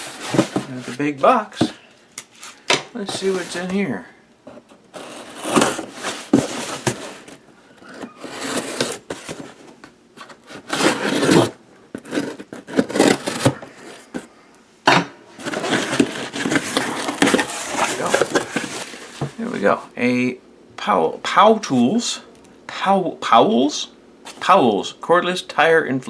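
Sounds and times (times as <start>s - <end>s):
cardboard scraping and rubbing: 0.0s - 1.8s, 3.0s - 3.8s, 4.9s - 14.3s, 15.4s - 19.8s.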